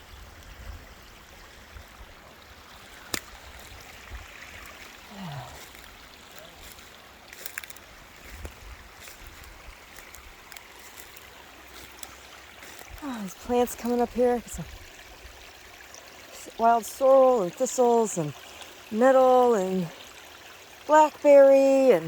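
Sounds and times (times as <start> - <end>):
wind rumble on microphone: 0.0 - 2.1
trickle of water hissing: 0.0 - 21.2.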